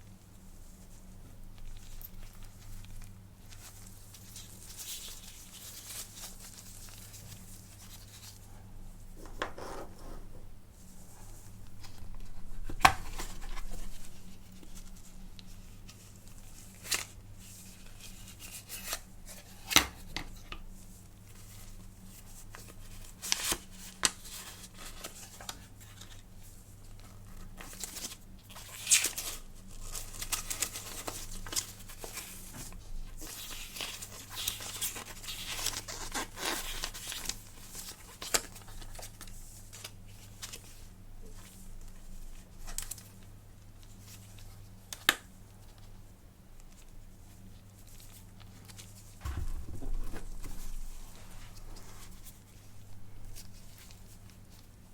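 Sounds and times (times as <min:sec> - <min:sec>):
faint low hum: 0:00.0 - 0:35.3, 0:37.5 - 0:54.9.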